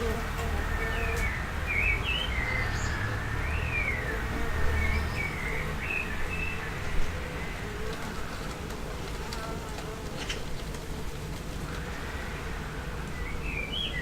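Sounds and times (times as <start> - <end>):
birds chirping: 0.0 - 9.5, 11.7 - 14.0
insects buzzing: 0.0 - 13.8
distant traffic: 0.0 - 14.0.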